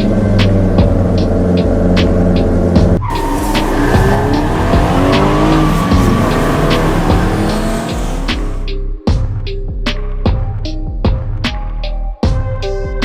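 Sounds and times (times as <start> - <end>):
race car engines revving: 0.0 - 8.7
tires squealing: 0.0 - 8.7
steady engine drone: 0.0 - 8.8
background music with steady beat: 0.0 - 13.0.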